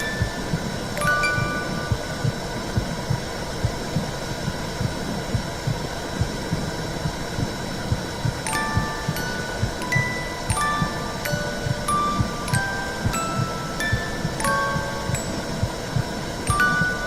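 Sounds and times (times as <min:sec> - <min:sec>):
wind chime notes: 0:00.0 - 0:02.5, 0:08.5 - 0:17.0
low heartbeat-like thuds: 0:01.4 - 0:12.4.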